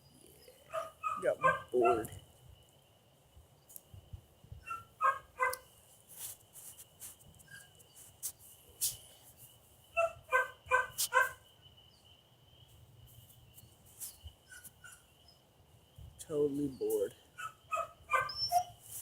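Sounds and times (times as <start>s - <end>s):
dog barking: 0.7s - 2.1s, 4.6s - 5.6s, 10.0s - 11.4s, 17.4s - 18.8s.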